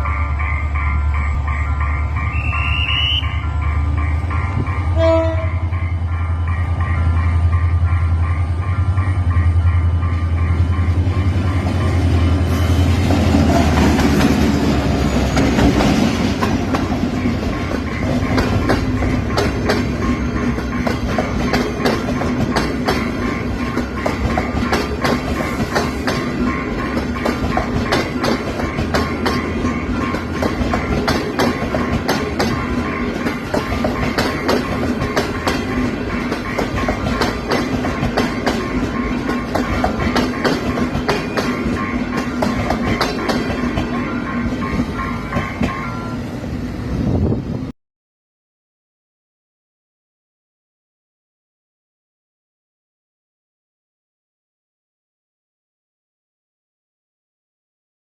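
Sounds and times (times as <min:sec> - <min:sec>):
train rumble: 0:00.0 - 0:47.7
wheels clacking over rail joints: 0:13.0 - 0:45.9.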